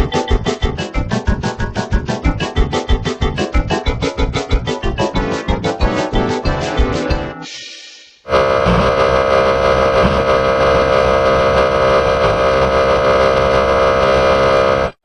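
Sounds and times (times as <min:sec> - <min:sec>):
harsh electronic tone: 0:08.3 - 0:15.0.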